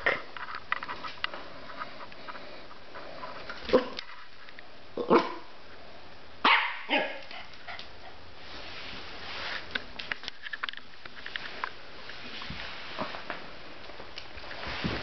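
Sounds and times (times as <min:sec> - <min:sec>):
puppy barking: 0:05.0 - 0:05.5, 0:06.4 - 0:07.5.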